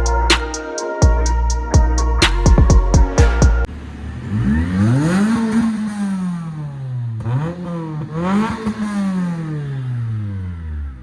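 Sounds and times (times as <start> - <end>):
background music: 0.0 - 3.7
vehicle engine revving: 3.6 - 11.0.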